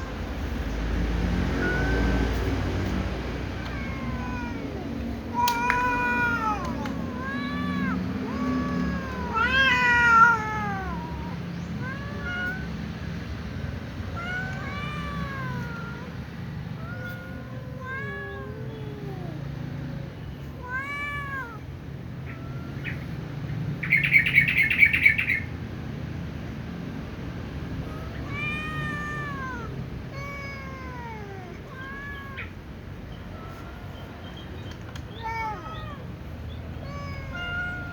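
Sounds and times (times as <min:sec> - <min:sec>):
cat meowing: 0:00.0 - 0:00.7, 0:01.4 - 0:12.9, 0:14.1 - 0:19.6, 0:20.3 - 0:23.2, 0:27.8 - 0:37.9.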